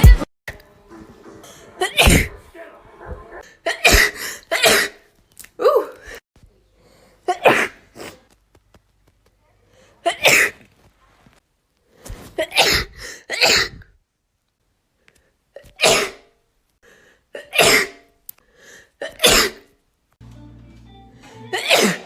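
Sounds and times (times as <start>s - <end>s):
background music: 0.0s - 3.4s, 20.2s - 22.0s
young women sneezing: 21.6s - 22.0s.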